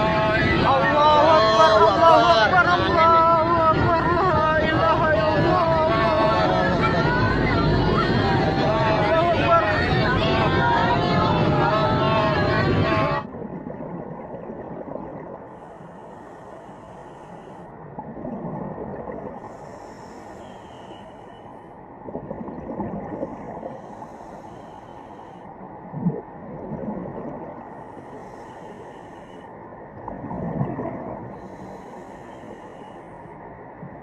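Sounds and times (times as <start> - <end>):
muffled hollow rushing noise: 0.0 - 34.0
faint hiss: 15.4 - 17.7, 19.3 - 21.8, 23.4 - 25.6, 27.7 - 29.6, 31.3 - 33.4.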